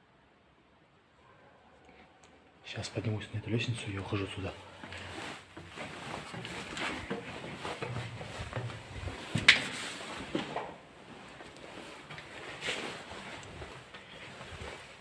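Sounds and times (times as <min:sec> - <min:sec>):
footsteps climbing stairs: 0:04.8 - 0:12.7.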